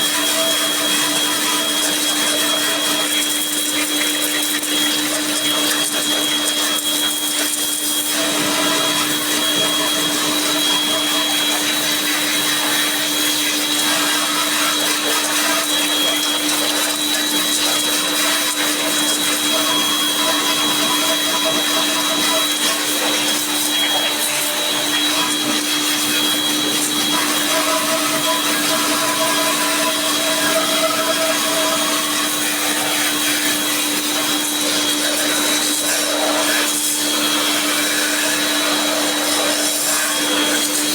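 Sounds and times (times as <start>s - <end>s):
cleaning machine motor running: 0.0s - 40.9s.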